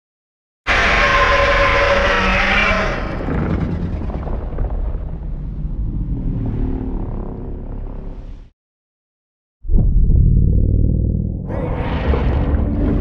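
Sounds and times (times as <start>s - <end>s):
monster roar: 0.7s - 5.0s.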